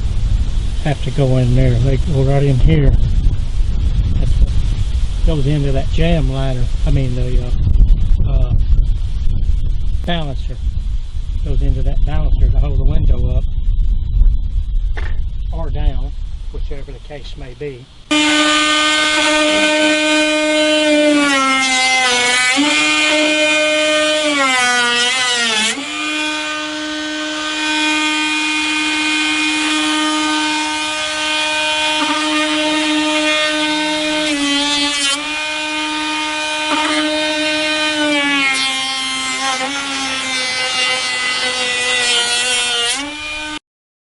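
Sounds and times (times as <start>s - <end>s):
power tool routing wood: 18.1s - 43.6s.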